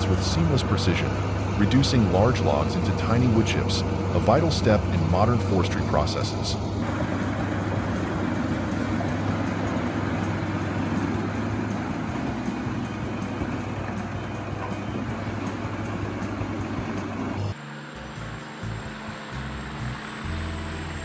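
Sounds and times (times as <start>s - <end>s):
wood chipper droning: 0.0s - 21.0s.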